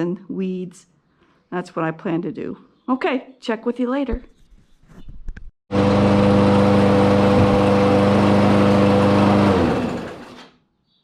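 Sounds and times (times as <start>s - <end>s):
lawn mower engine running: 5.7s - 10.5s.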